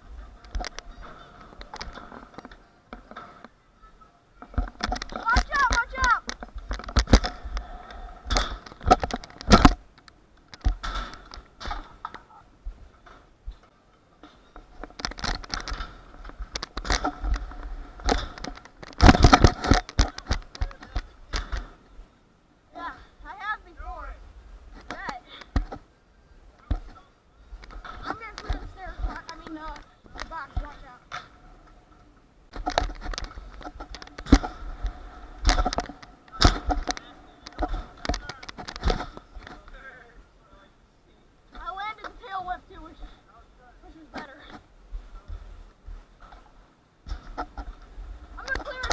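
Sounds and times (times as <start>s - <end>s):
skateboard wheels rolling on concrete: 0.0s - 22.1s, 26.6s - 40.8s, 43.8s - 48.9s
skateboard wheels rumbling on concrete: 32.9s - 38.0s.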